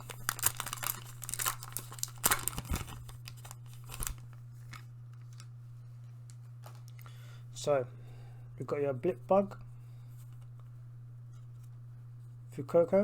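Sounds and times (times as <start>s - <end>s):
cards rustling: 0.0s - 5.5s
foil wrapper crinkling and tearing: 0.0s - 5.5s
steady low hum: 0.0s - 13.0s.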